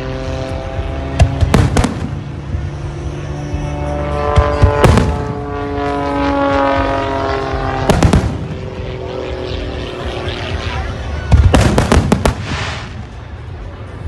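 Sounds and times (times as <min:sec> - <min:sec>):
fireworks bangs: 0:01.2 - 0:02.4, 0:04.3 - 0:05.6, 0:07.8 - 0:08.8, 0:11.3 - 0:13.2.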